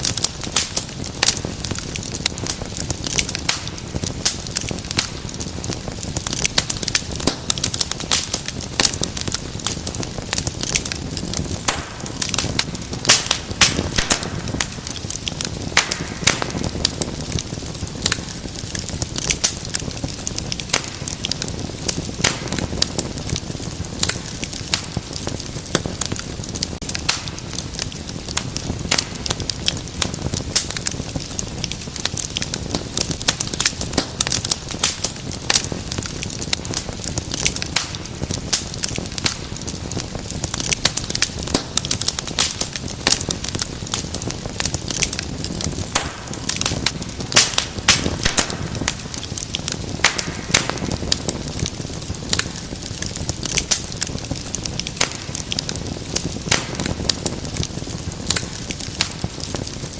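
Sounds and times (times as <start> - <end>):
low rushing flame: 0.0 - 59.9
wood fire crackling and popping: 0.0 - 59.9.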